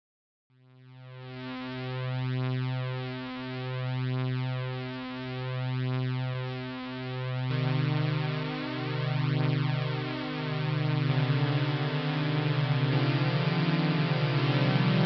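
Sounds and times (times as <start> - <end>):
low buzzy synthesizer drone: 7.3 - 15.0.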